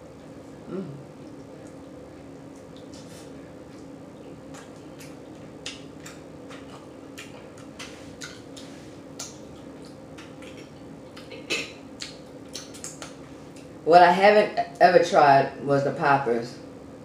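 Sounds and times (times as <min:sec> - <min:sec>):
faint steady hum: 0:00.0 - 0:17.0
person chewing and lip smacking: 0:00.2 - 0:13.8.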